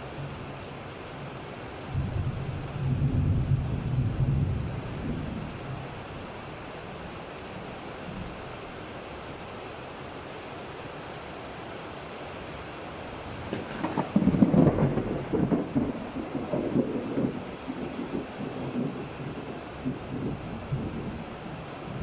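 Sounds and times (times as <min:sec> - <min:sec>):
steady rain hiss: 0:00.0 - 0:22.0
low thunder rumble: 0:01.9 - 0:05.6, 0:13.5 - 0:22.0.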